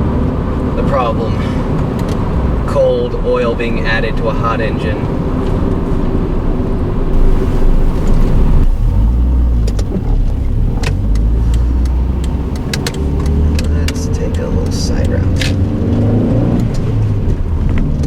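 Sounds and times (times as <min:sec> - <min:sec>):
road noise: 0:00.0 - 0:18.0
car engine: 0:05.0 - 0:18.0.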